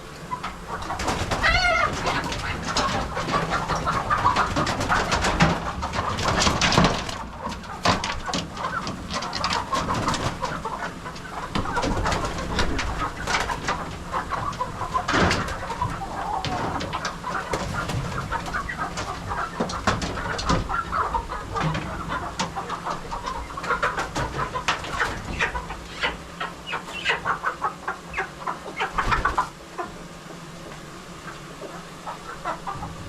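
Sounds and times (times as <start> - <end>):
chickens squawking: 0.0 - 33.0
wings flapping: 0.4 - 27.7, 28.8 - 29.5.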